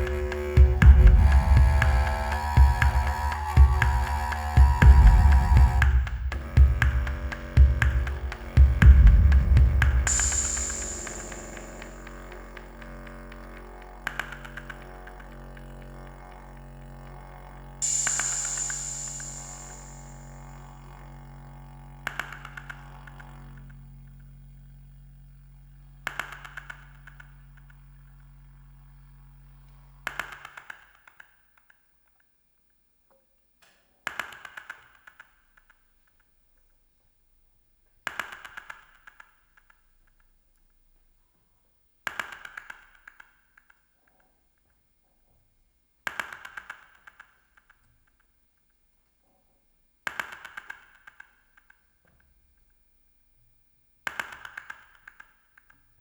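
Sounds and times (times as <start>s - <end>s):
low drone: 0.0s - 15.8s, 17.6s - 25.9s.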